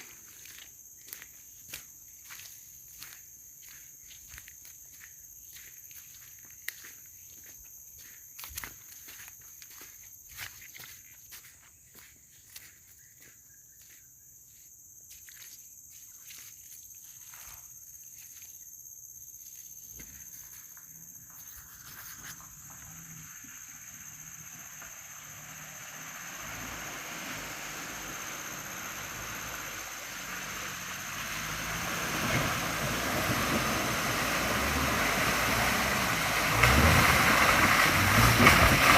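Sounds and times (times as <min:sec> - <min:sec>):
van engine approaching: 0:21.1 - 0:38.9.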